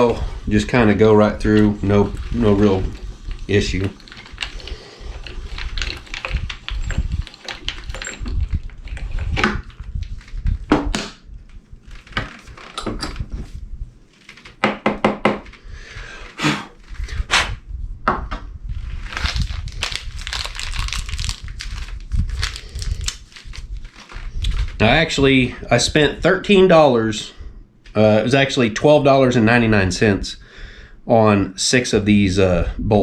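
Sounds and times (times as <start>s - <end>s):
metal scraping: 16.3s - 17.6s.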